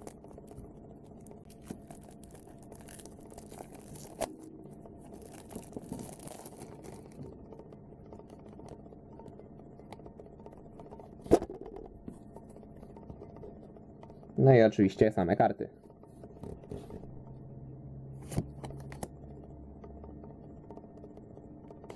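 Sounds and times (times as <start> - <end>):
packaging rustling and clicking: 0.0 - 13.5.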